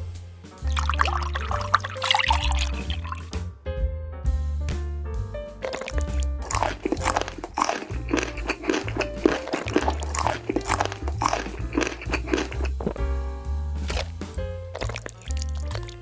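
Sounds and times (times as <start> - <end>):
background music with bass line: 0.0 - 16.0
crunchy biting and chewing: 5.7 - 13.0, 13.9 - 16.0.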